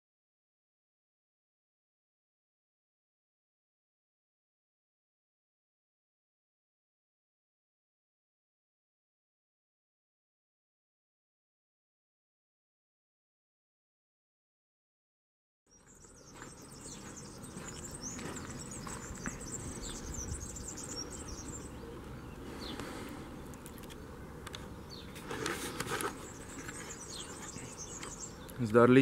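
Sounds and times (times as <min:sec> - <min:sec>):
outdoor background hiss: 0:15.7 - 0:29.0
small birds chirping: 0:15.7 - 0:29.0
rustle: 0:15.8 - 0:29.0.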